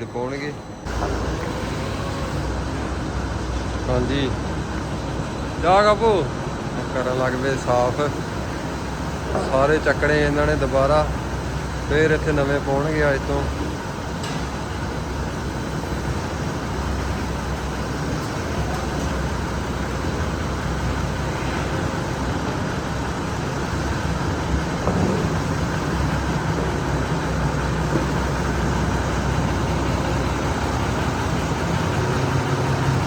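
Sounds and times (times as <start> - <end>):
farm machine engine running: 0.0 - 33.0.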